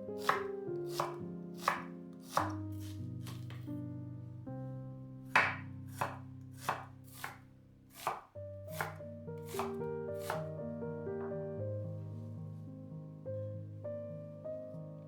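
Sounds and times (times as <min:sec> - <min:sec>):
soft piano music: 0:00.0 - 0:15.0
knife chopping on cutting board: 0:00.2 - 0:03.6, 0:05.4 - 0:10.5.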